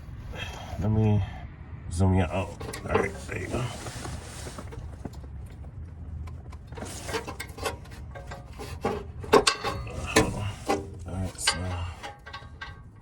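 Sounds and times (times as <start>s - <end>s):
tool clicks and knocks: 6.3s - 13.0s.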